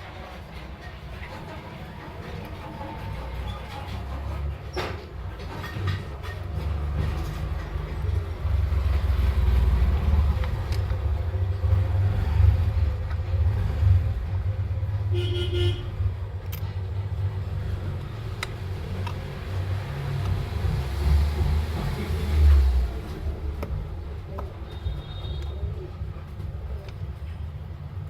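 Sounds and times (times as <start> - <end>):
road traffic rumble: 0.0 - 28.0
vehicle horn toot: 15.1 - 16.0, 24.7 - 25.6.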